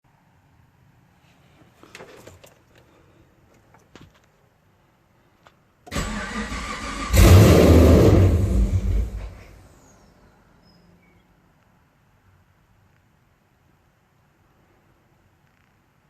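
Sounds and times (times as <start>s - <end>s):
engine cranking on starter: 5.9s - 9.6s
engine revving loudly: 6.0s - 9.6s.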